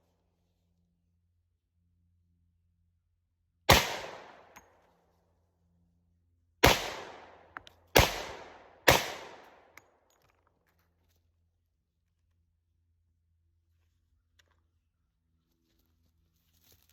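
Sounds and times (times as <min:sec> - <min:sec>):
pistol shots with echo: 0:03.7 - 0:04.6, 0:06.6 - 0:09.8.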